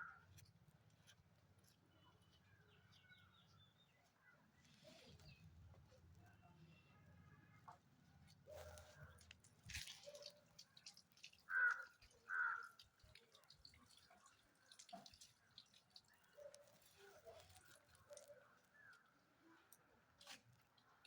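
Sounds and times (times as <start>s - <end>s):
faint clicks and rustles: 13.1s - 21.0s.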